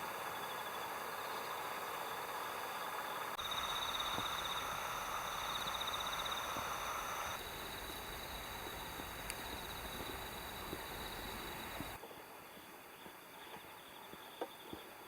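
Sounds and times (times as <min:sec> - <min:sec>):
insects trilling: 0:00.0 - 0:12.0
louder trilling and hiss: 0:03.4 - 0:12.0.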